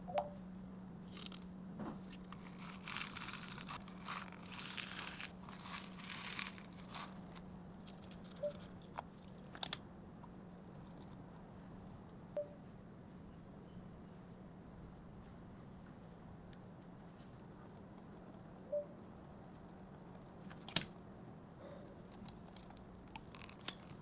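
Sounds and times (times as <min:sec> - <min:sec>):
faint steady hum: 0:00.0 - 0:24.0
stress ball toy crinkling: 0:01.1 - 0:01.4, 0:02.0 - 0:09.0, 0:22.5 - 0:24.0.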